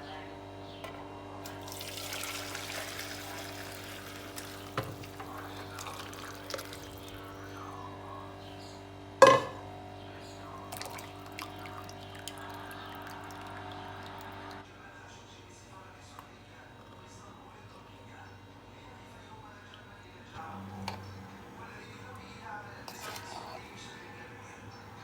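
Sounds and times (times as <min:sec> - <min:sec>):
water running in a sink: 0:01.4 - 0:07.8, 0:10.4 - 0:14.6, 0:20.4 - 0:25.0
steady hum: 0:20.3 - 0:25.0.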